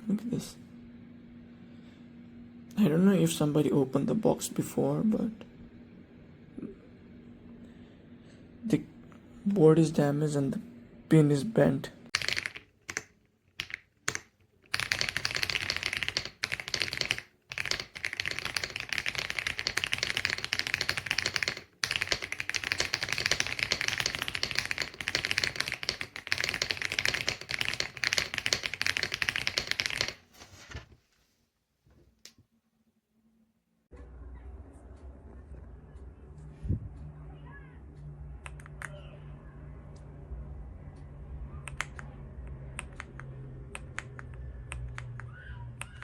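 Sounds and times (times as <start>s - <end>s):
mechanical keyboard typing: 12.1s - 30.2s.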